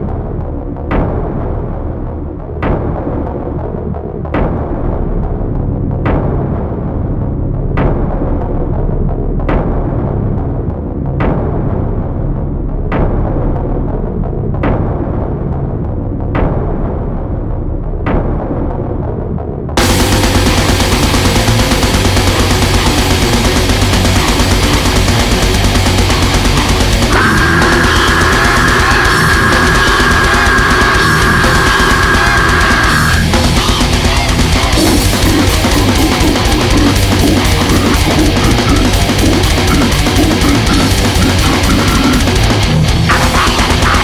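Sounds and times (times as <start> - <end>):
heavy metal music: 0.0 - 44.0
high noisy held tone: 19.8 - 44.0.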